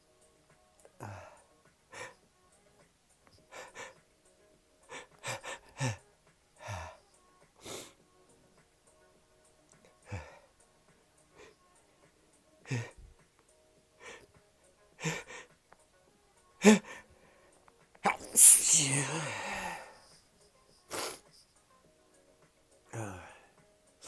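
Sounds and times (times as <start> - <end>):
person breathing wheezily: 1.0 - 2.2, 3.4 - 4.0, 4.8 - 6.0, 6.6 - 8.0, 10.0 - 10.5, 12.7 - 13.0, 14.0 - 14.3, 15.0 - 15.6, 16.6 - 20.2, 20.9 - 21.4
person sniffing: 7.6 - 7.9, 18.1 - 20.2, 20.9 - 21.4
low voiced catch: 18.0 - 19.9.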